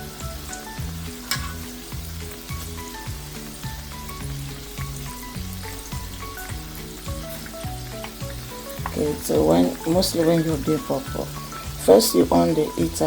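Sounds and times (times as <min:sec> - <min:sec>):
background music: 0:00.0 - 0:13.0
dough deep-frying in oil: 0:00.0 - 0:13.0.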